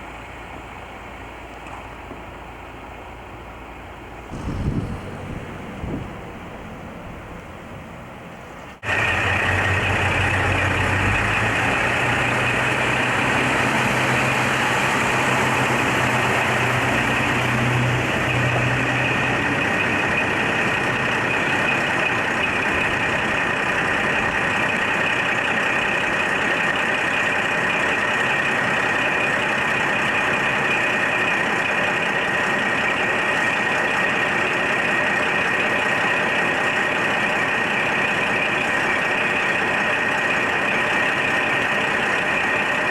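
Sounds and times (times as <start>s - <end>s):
railcar engine hum: 0.0s - 42.9s
rumble of running noise: 4.2s - 12.9s.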